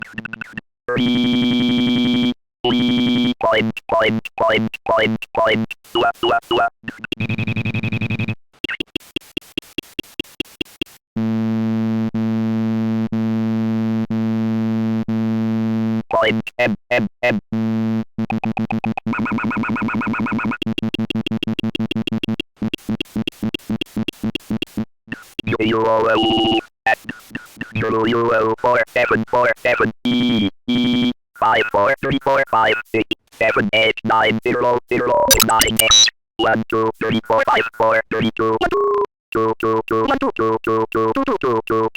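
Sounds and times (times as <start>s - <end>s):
buzzy electronic tones: 35.3s - 36.1s.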